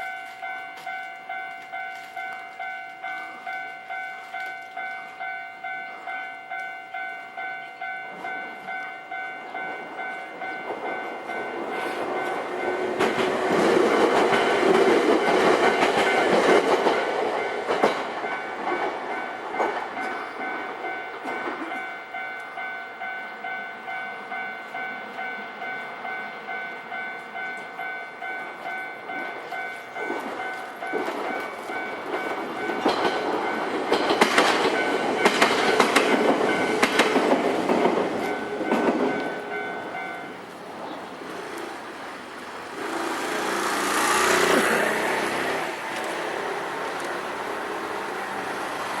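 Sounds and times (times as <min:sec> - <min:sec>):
level crossing warning bell: 0:00.0 - 0:40.7
train wheels clattering: 0:08.1 - 0:22.0, 0:28.6 - 0:40.4.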